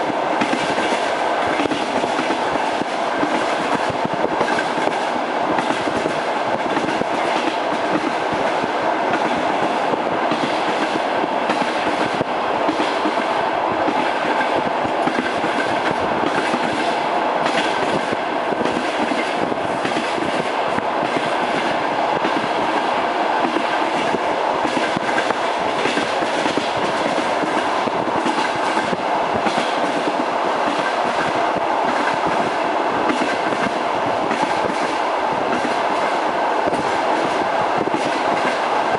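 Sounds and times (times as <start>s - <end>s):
train wheels clattering on rails: 0.0s - 38.9s.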